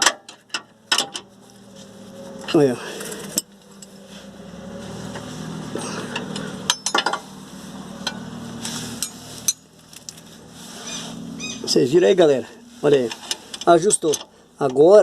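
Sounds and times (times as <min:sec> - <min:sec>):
low hum: 0:00.2 - 0:13.6
metal tools clinking on bolt: 0:03.0 - 0:04.0, 0:06.1 - 0:07.3, 0:09.0 - 0:09.6, 0:13.0 - 0:14.8.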